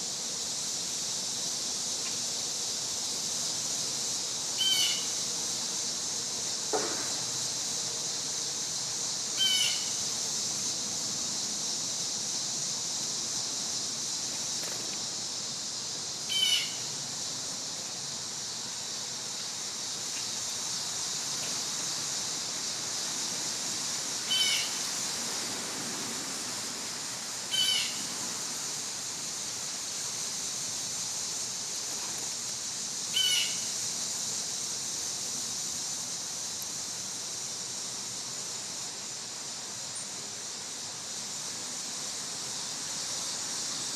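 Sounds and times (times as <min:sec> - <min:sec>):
cicadas droning: 0:00.0 - 0:43.9.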